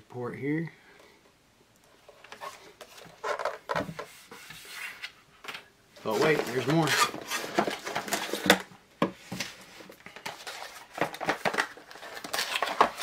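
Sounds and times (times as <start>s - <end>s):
packaging rustling: 6.0s - 13.0s.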